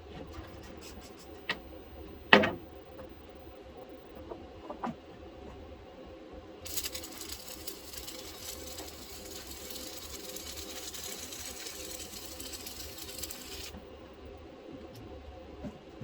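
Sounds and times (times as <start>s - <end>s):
low electrical hum: 0.0s - 16.0s
arc welding crackle: 6.6s - 13.8s.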